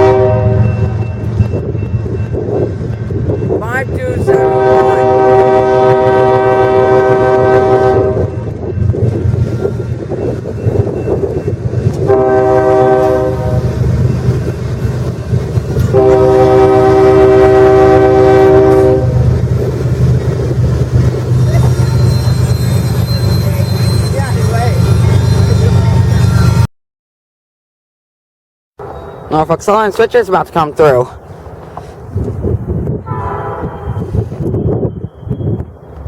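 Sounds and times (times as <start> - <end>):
locomotive air horn blasts: 0.0 - 1.0, 4.2 - 8.3, 12.0 - 13.7, 15.8 - 19.2, 33.0 - 34.2
passing train rumble and clatter: 0.0 - 26.7, 28.8 - 36.0.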